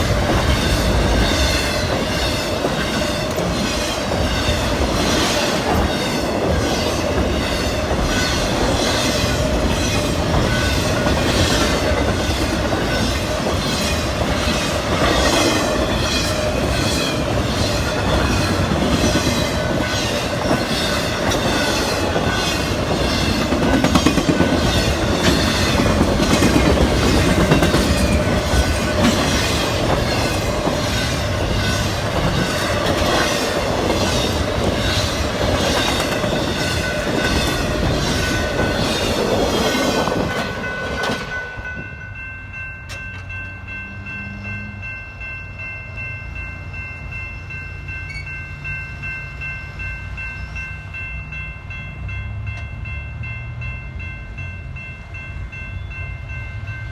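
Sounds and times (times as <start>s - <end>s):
train wheels clicking over rail joints: 0.0s - 42.0s.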